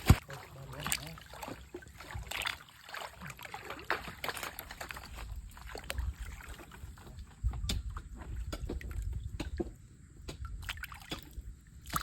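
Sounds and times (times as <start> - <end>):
water trickling: 0.0 - 9.4
water splashing and sloshing: 0.0 - 12.0.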